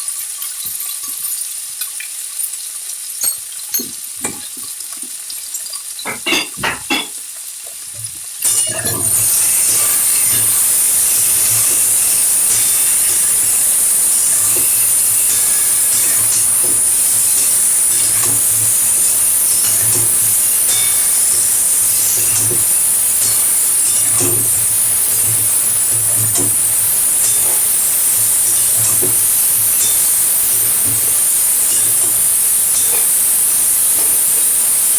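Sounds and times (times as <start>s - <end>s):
vegetables sizzling in oil: 0.0s - 34.9s
spatula knocking and scraping pan: 8.5s - 33.2s.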